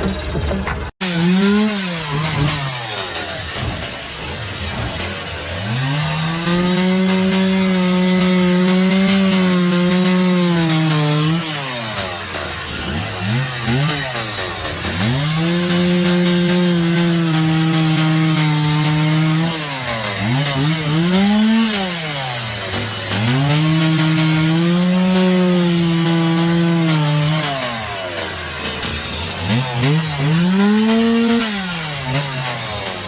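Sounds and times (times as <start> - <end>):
motor saw cutting wood: 1.0 - 33.0.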